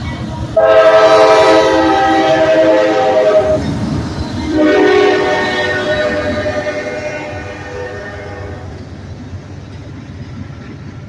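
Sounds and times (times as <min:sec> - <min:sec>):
train rumble: 0:00.0 - 0:11.0
locomotive air horn blasts: 0:00.6 - 0:03.7, 0:04.4 - 0:08.8.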